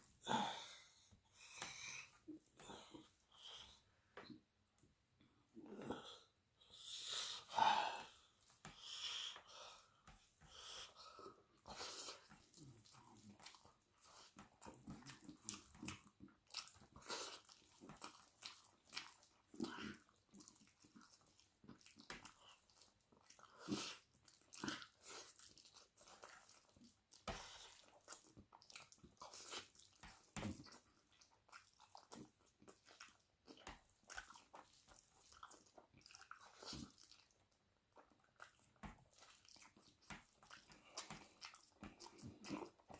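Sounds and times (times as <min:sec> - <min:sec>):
chewing and biting food: 0:11.6 - 0:42.9.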